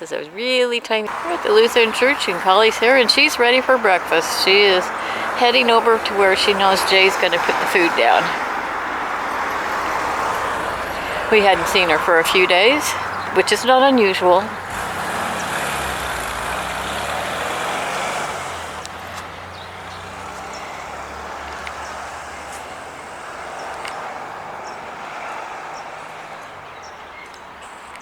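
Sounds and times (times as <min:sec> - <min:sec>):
vehicle passing on road: 0:00.8 - 0:28.0.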